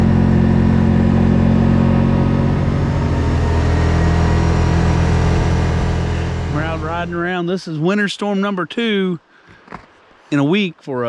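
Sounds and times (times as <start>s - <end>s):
vehicle engine running: 0.0s - 7.4s.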